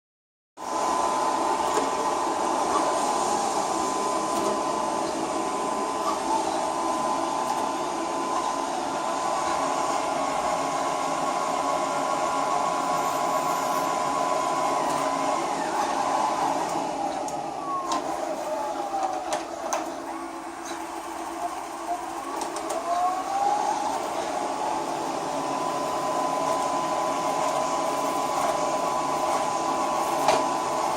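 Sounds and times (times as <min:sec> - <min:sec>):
robot vacuum cleaner running: 0:00.6 - 0:30.9.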